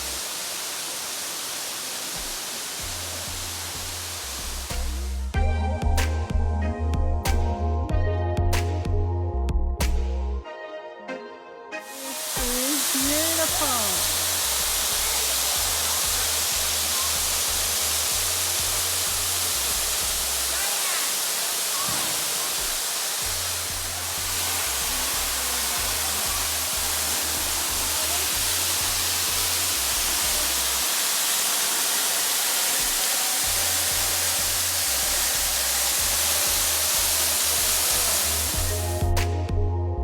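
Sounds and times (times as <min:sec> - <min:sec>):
waterfall rushing: 0:00.0 - 0:05.3, 0:11.9 - 0:38.8
electronic background music: 0:38.4 - 0:40.0.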